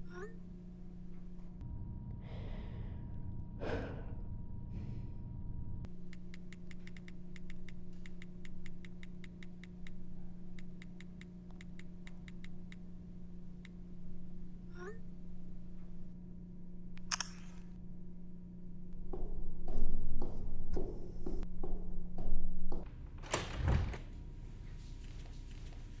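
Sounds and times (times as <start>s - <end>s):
steady low hum: 0.0s - 26.0s
person sighing: 3.6s - 4.2s
keyboard typing clicks: 6.1s - 12.8s.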